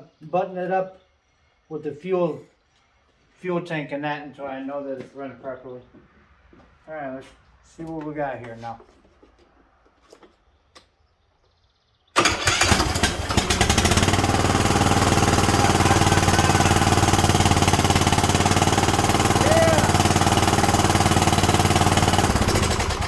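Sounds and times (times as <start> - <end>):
lawn mower engine starting and running: 12.2 - 23.0.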